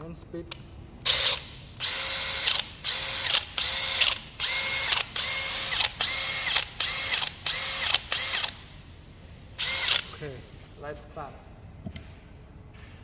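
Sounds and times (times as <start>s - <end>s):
drill whining: 1.1s - 8.6s, 9.6s - 10.1s.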